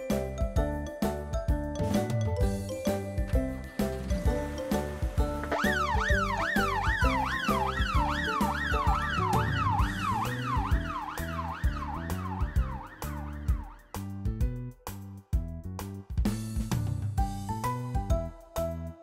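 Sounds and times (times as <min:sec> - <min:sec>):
children's music with steady beat: 0:00.0 - 0:19.0
police siren yelping: 0:05.4 - 0:14.0.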